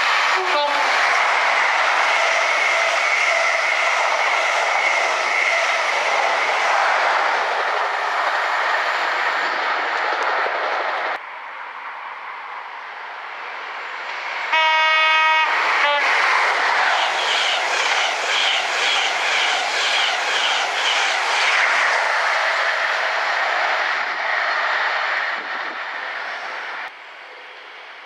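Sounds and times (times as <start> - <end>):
train horn: 0.4 - 0.9, 14.5 - 16.1
train wheels clickety-clack: 15.8 - 23.1.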